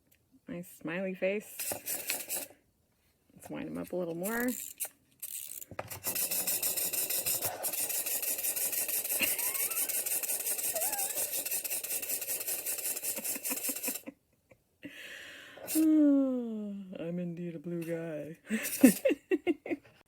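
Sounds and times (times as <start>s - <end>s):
clockwork toy motor whirring: 1.6s - 2.6s, 4.2s - 14.1s, 15.7s - 15.9s, 18.5s - 19.1s.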